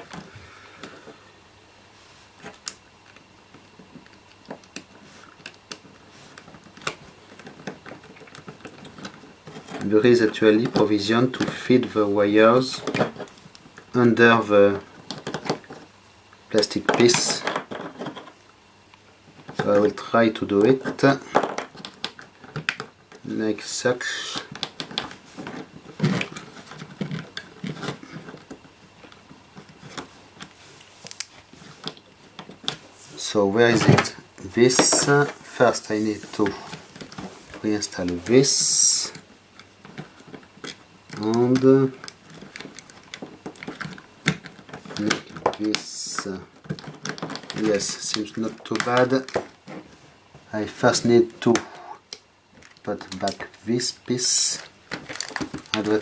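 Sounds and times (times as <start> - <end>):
plastic parts clicking and tapping: 2.4 - 12.0, 14.8 - 15.9, 19.4 - 23.3, 24.2 - 32.8, 36.4 - 49.9, 50.9 - 53.6, 54.2 - 56.0.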